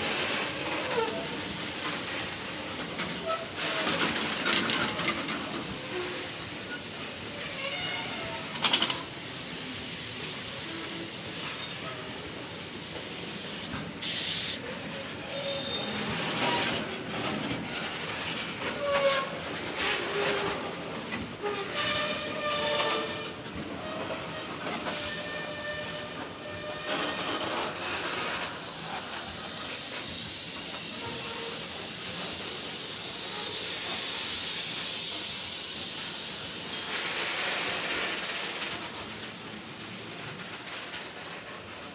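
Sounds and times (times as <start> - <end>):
train wheels rushing: 0.0 - 41.9
wheel squeals: 15.2 - 16.8.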